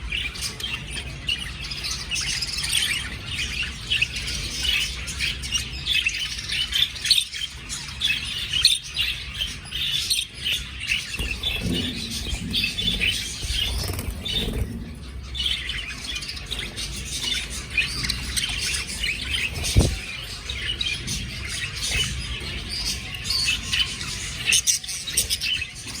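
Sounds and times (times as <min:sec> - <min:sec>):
budgerigars chirping: 0:00.0 - 0:26.0.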